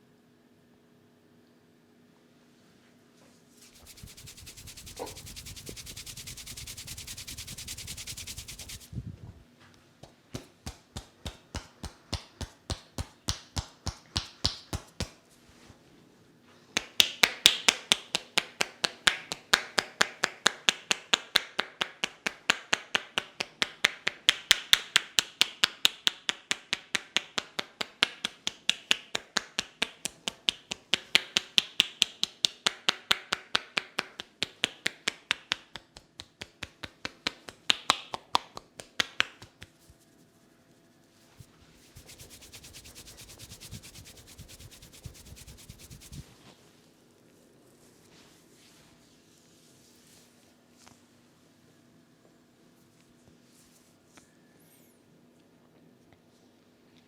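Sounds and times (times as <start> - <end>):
hands rubbing hair and scalp: 3.6 - 8.9, 36.4 - 46.5
hands slapping and tapping head: 3.7 - 8.9, 10.0 - 15.2, 16.8 - 40.0, 41.8 - 46.2.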